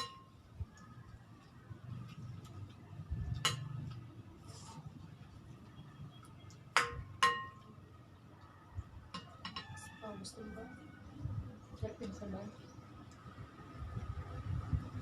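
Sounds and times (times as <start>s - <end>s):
utensils clinking on plates: 3.4s - 3.9s.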